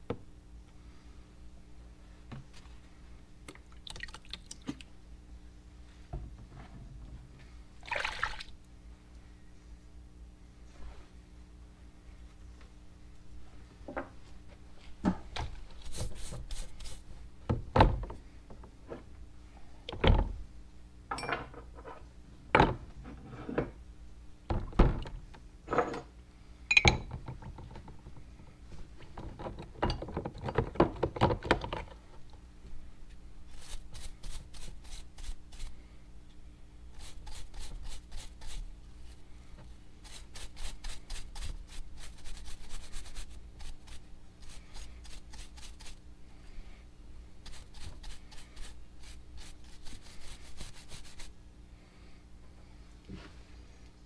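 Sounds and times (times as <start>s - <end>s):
fast rubbing strokes: 15.8s - 17.1s, 33.5s - 35.8s, 36.9s - 39.2s, 40.0s - 46.0s, 47.4s - 51.4s.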